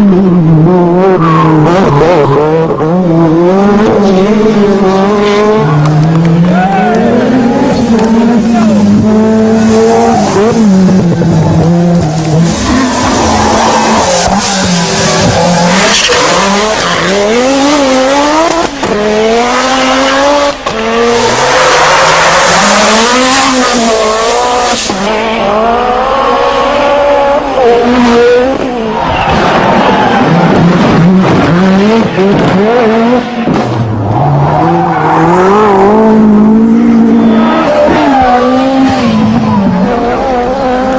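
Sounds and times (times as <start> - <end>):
rally car engines revving: 0.0 - 40.9
rushing noise: 6.5 - 18.4.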